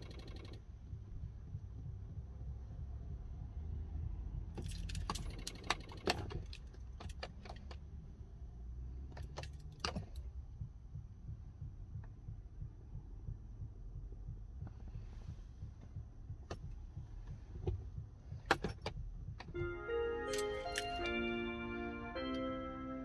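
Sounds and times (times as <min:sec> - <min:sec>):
steady low rumble: 0:00.5 - 0:05.6, 0:06.2 - 0:23.0
car keys jangling and clicking: 0:04.6 - 0:07.8, 0:09.1 - 0:10.3, 0:20.2 - 0:21.2.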